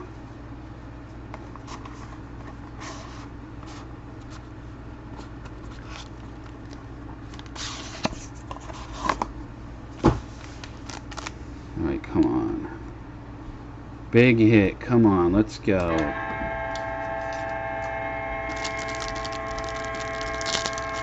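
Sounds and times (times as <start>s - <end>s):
cardboard and wrapping rustling: 10.0s - 11.4s, 18.5s - 21.0s.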